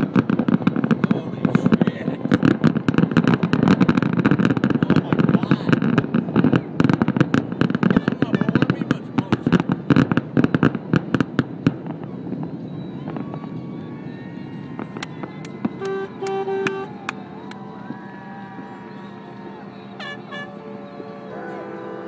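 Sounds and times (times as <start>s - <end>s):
fireworks bangs and crackles: 0.0s - 21.4s
horn blasts: 15.4s - 22.0s.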